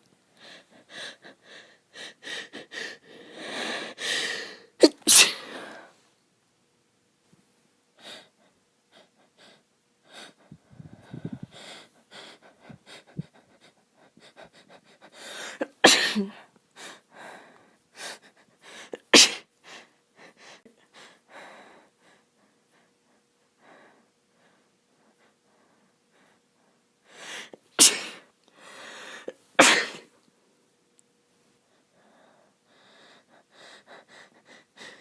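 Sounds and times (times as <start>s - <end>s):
woman sneezing: 4.8s - 5.6s, 15.6s - 16.4s, 19.2s - 19.4s, 27.8s - 28.2s, 29.6s - 30.1s
quick breaths: 8.0s - 15.7s, 19.6s - 29.4s, 31.7s - 35.0s.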